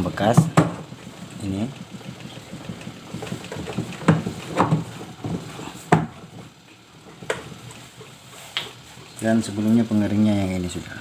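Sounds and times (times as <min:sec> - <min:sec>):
low clatter: 0:00.0 - 0:08.1
sharp knocks on machine parts: 0:00.3 - 0:01.0, 0:01.8 - 0:06.2.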